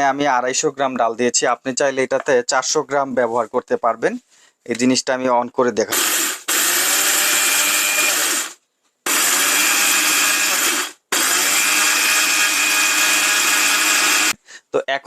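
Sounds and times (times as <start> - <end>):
mixer grinder grinding lentils: 6.0 - 14.4.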